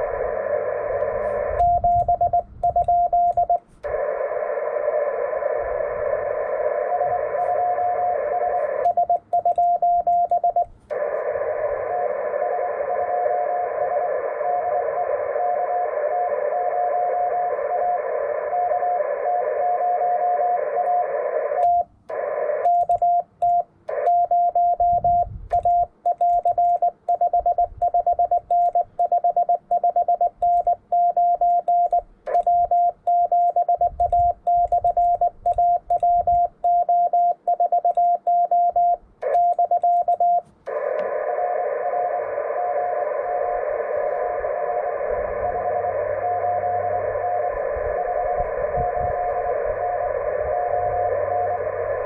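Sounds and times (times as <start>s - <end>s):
radio receiver hiss: 0.0s - 27.0s, 39.0s - 52.0s
morse code sidetone beeping: 0.8s - 3.6s, 6.4s - 12.1s, 22.6s - 40.5s.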